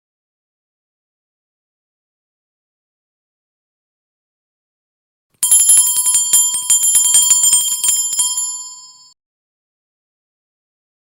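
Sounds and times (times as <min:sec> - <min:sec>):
small hand bell ringing: 0:05.4 - 0:09.2.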